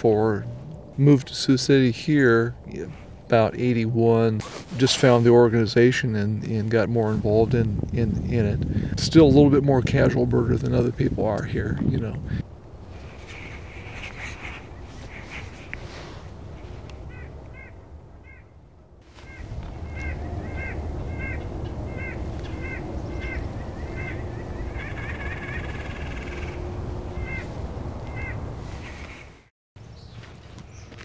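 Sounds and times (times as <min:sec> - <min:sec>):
low rumble: 0:00.0 - 0:13.2, 0:16.3 - 0:29.4
birds calling hoarsely: 0:13.0 - 0:31.0.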